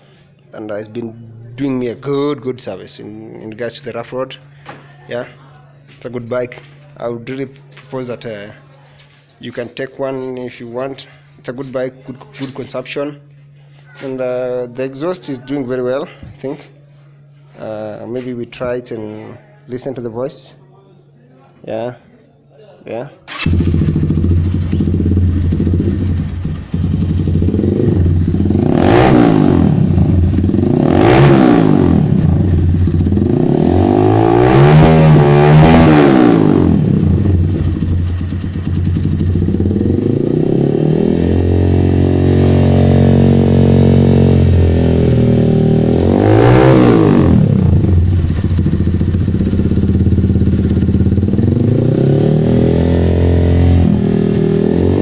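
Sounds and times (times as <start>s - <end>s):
motorcycle engine idling and revving: 23.3s - 55.0s.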